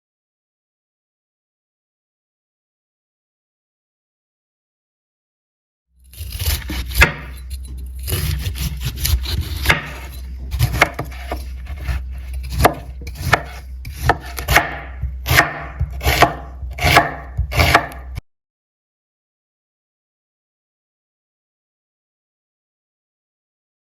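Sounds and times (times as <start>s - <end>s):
low steady hum: 6.0s - 18.2s
knife chopping on cutting board: 6.2s - 7.4s, 8.0s - 18.2s.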